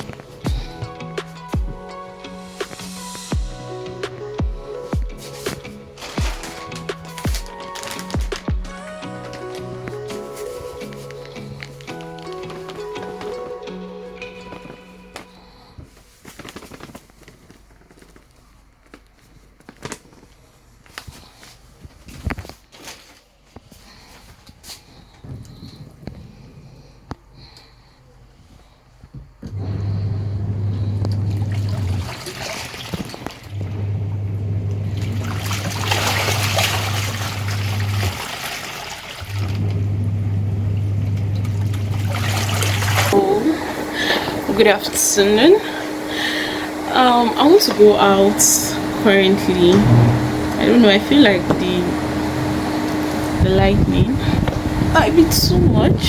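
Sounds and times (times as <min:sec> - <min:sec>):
water sloshing: 0:00.0 - 0:16.7, 0:31.0 - 0:33.8, 0:34.6 - 0:40.2, 0:41.0 - 0:55.9
washing machine running: 0:00.0 - 0:18.1, 0:29.5 - 0:56.0.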